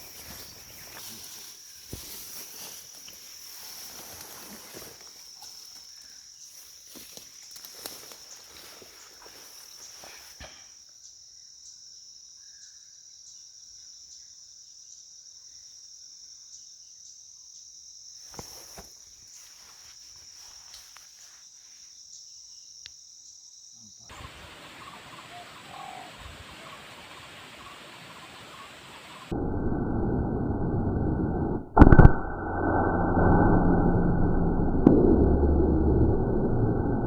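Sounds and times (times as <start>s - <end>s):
rustling in undergrowth: 0.0s - 10.4s, 18.2s - 21.9s.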